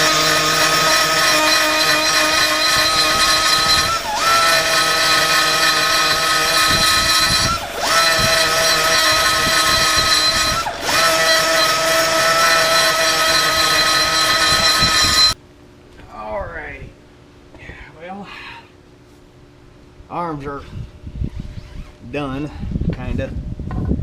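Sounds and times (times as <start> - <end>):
power tool whining: 0.0 - 15.4.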